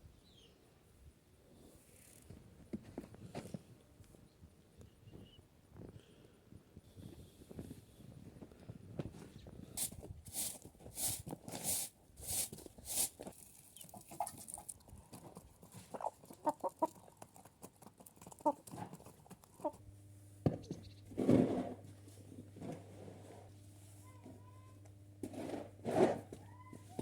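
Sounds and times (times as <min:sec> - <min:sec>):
chickens clucking: 0:13.8 - 0:19.8.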